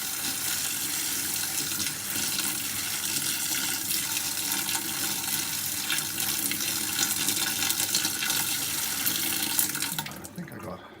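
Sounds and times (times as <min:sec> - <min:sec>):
water pouring and splashing: 0:00.0 - 0:10.8.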